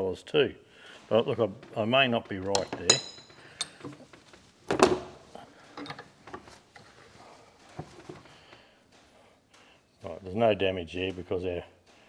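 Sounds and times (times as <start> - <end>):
metal clicks and knocks: 1.6 - 6.9
metal parts clunking: 1.6 - 7.0.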